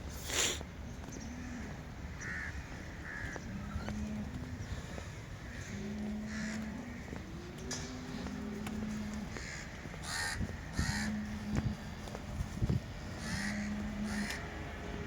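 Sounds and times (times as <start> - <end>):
steady low rumble: 0.0 - 15.0
crows cawing: 1.3 - 12.1, 13.0 - 14.6.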